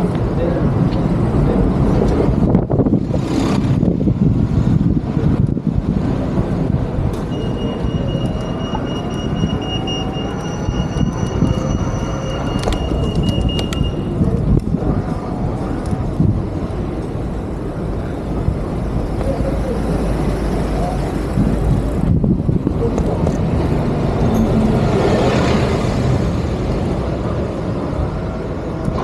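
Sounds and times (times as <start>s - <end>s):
rail vehicle rumbling: 0.0s - 29.0s
high wheel squeal: 7.3s - 14.2s, 24.2s - 25.4s.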